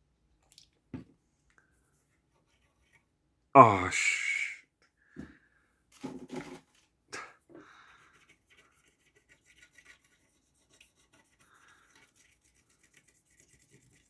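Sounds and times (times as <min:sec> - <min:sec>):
tools scratching circuit board: 0:08.1 - 0:14.0.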